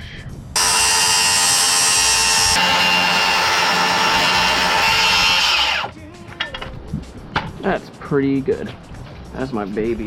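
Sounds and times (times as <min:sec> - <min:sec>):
circular saw cutting wood: 0:00.6 - 0:05.9.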